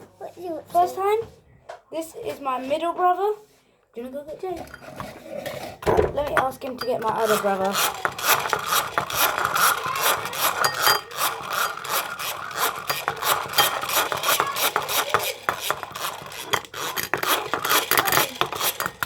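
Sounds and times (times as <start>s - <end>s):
whisk scraping a bowl: 4.4s - 19.0s.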